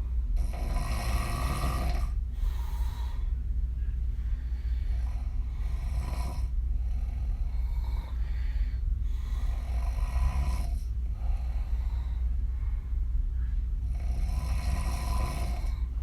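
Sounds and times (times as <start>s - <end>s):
steady low hum: 0.0s - 16.0s
woman snoring: 0.4s - 3.2s, 4.9s - 8.2s, 9.2s - 12.0s, 13.9s - 15.9s.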